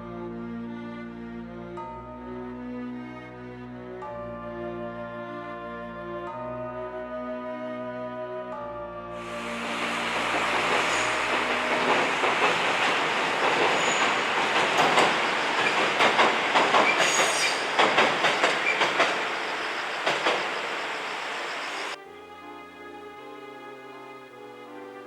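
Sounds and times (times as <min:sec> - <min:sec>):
train rolling on track: 0:09.2 - 0:22.0
wheels clicking over rail joints: 0:09.3 - 0:22.0.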